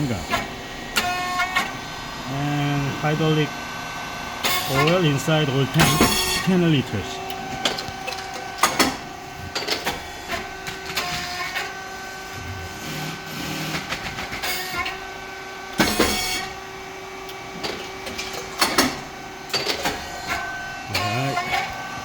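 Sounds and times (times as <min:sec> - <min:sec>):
machine motor hum: 0:00.0 - 0:22.0
mechanical clicks and clanks: 0:04.4 - 0:05.1, 0:05.7 - 0:06.5, 0:07.2 - 0:11.7, 0:13.4 - 0:15.0, 0:17.2 - 0:21.8.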